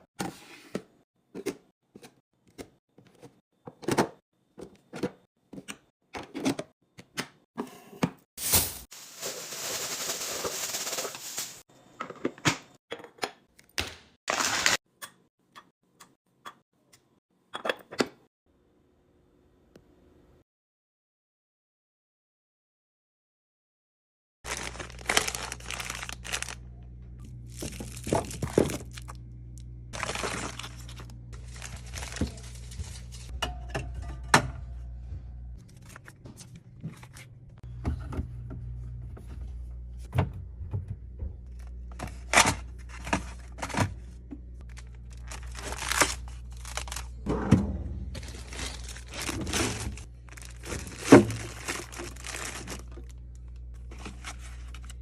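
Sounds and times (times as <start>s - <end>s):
plastic packaging crinkling: 8.4s - 11.6s, 14.3s - 14.8s, 24.5s - 26.6s, 27.5s - 29.2s, 30.0s - 33.3s, 44.6s - 47.2s, 48.2s - 55.0s.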